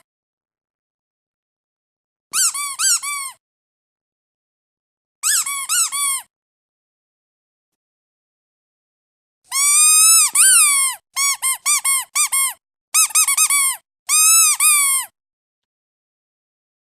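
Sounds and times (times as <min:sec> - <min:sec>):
squeaky dog toy squeaking: 0:02.3 - 0:03.4, 0:05.2 - 0:06.3, 0:09.5 - 0:15.1.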